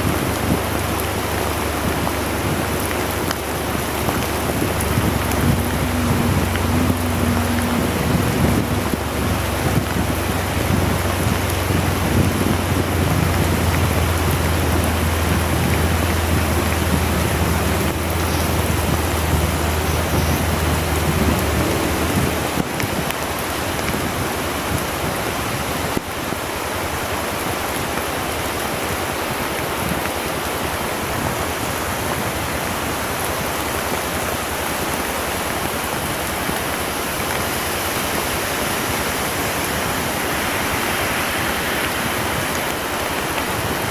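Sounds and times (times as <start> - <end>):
motorcycle engine humming: 0.0 - 25.1
heavy rain pouring: 0.0 - 43.9.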